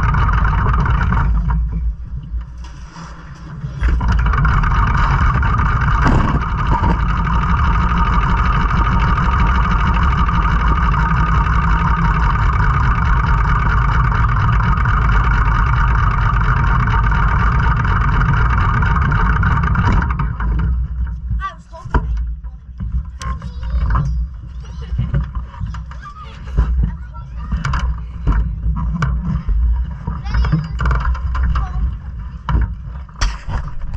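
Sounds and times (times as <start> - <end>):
race car engine running: 0.0 - 2.8, 3.4 - 21.4.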